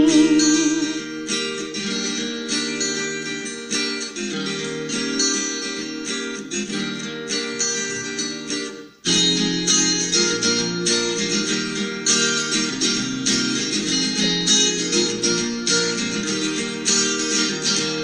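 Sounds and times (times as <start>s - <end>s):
acoustic guitar strumming: 0.0s - 18.0s.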